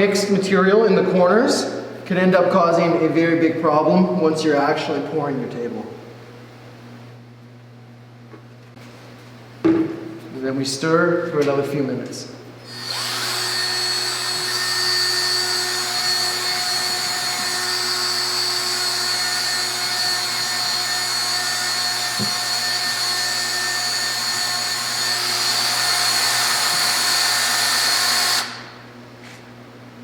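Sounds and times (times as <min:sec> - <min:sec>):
power drill running: 0:12.6 - 0:28.8.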